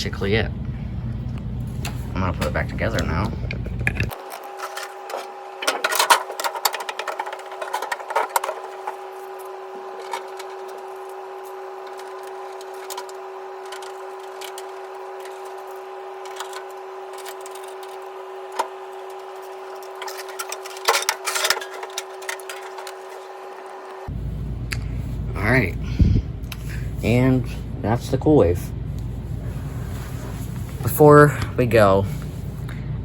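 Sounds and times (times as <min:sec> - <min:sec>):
steady hum: 0:00.0 - 0:33.0
microwave parts clicking and knocking: 0:02.4 - 0:23.4.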